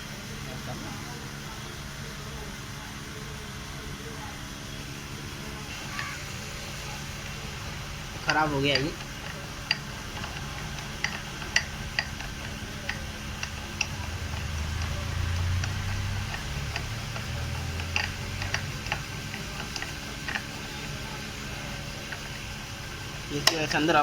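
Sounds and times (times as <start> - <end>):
low steady hum: 0.0 - 24.0
metallic clicks and taps: 8.2 - 20.6.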